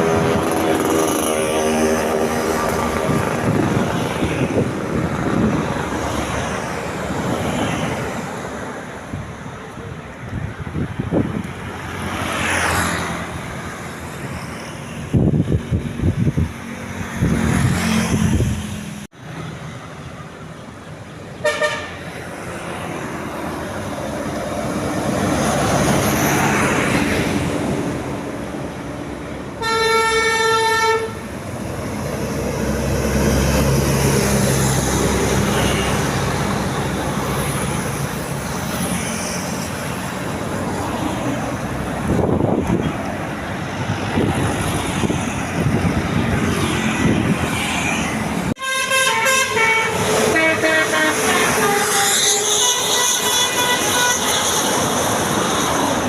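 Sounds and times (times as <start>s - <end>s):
buses passing: 0.0s - 56.0s
musical air horn: 21.4s - 22.0s, 29.6s - 31.2s, 48.6s - 55.0s.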